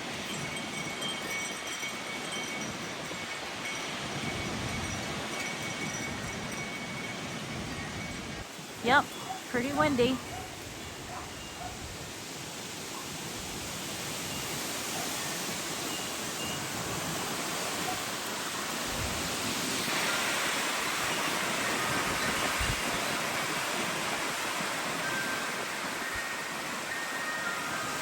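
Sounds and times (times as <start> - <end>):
strong gusty wind: 0.0 - 28.0
wind buffeting microphone: 18.7 - 25.0.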